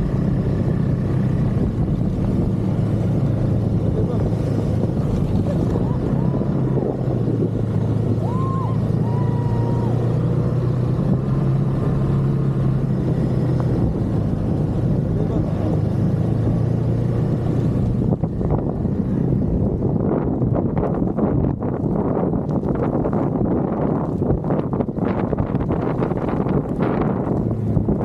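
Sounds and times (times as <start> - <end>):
snowmobile engine droning: 0.0 - 21.3
wind buffeting microphone: 0.0 - 28.0.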